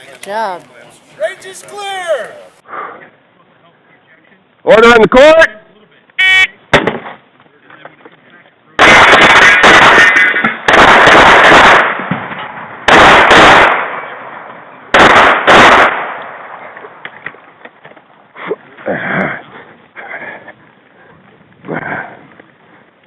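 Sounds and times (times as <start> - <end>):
pistol shots: 8.8 - 14.2, 14.9 - 16.8.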